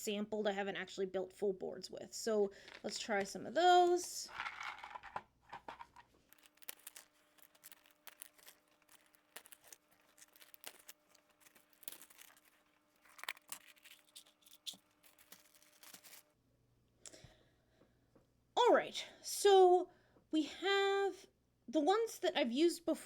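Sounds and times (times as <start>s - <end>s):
plastic items crinkling and clicking: 2.6s - 3.3s, 4.3s - 16.3s.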